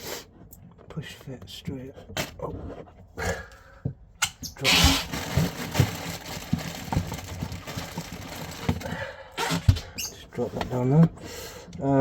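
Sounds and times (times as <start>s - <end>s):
loud rustling: 4.6s - 8.9s.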